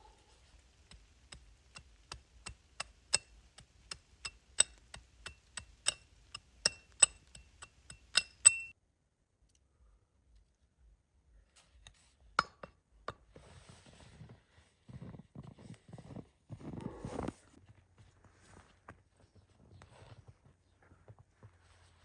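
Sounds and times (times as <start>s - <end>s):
sharp metallic taps: 0.9s - 8.7s.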